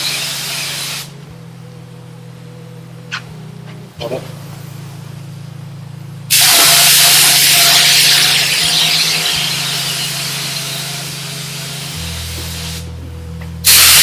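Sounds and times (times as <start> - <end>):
spray gun hissing: 0.0 - 1.1, 6.3 - 12.9, 13.6 - 14.0
steady low hum: 0.0 - 14.0.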